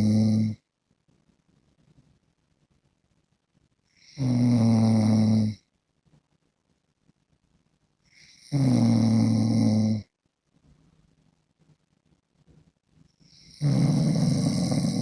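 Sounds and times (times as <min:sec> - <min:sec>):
man snoring: 0:00.0 - 0:00.6, 0:04.0 - 0:05.6, 0:08.2 - 0:10.1, 0:13.3 - 0:15.0.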